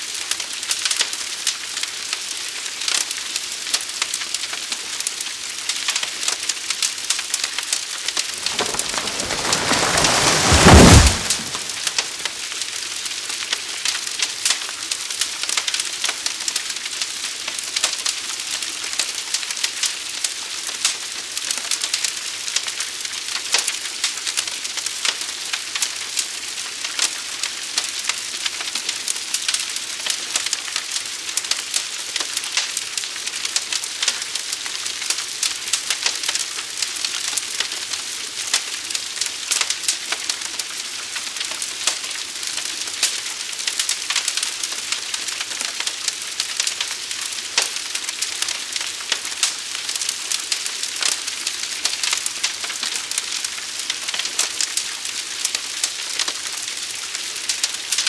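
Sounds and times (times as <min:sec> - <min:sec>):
fire crackling pops and snaps: 0:08.4 - 0:12.2.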